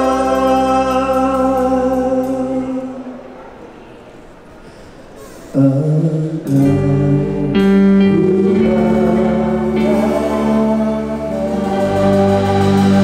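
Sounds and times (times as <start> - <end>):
deep bass: 6.4 - 13.0
sustained chords: 6.4 - 13.0.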